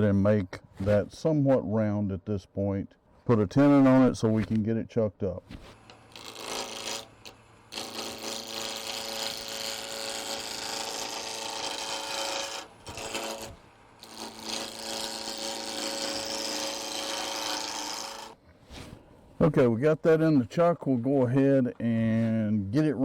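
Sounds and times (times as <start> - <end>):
gouge scraping spinning wood: 5.7 - 18.4
lathe hum: 5.8 - 18.4.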